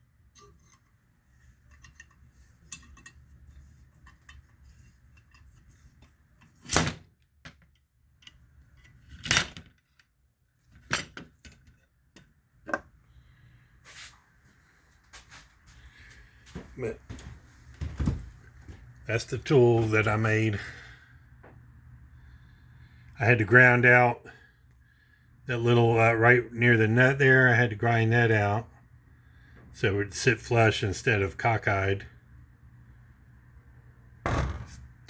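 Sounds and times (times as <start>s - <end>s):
metal parts clinking: 1.7s - 3.2s.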